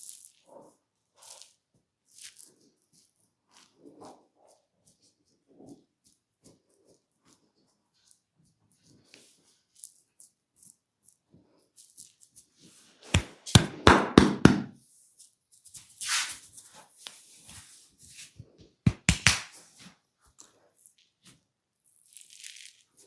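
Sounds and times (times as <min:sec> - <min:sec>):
brushing rub: 0:00.0 - 0:13.7, 0:14.9 - 0:18.4.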